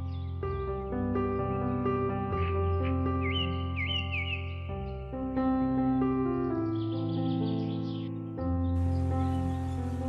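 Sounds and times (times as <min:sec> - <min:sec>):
calm instrumental music: 0:00.0 - 0:10.0
faint bird chirps: 0:02.4 - 0:05.0, 0:06.5 - 0:10.0.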